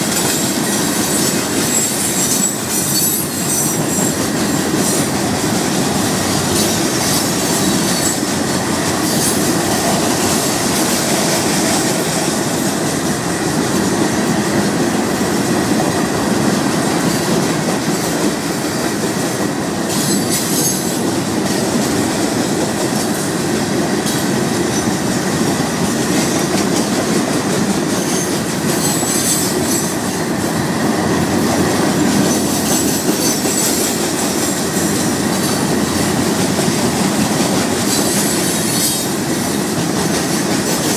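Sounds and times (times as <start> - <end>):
steel wheels rolling on rail: 0.0 - 40.9
high wheel squeal: 1.1 - 5.1.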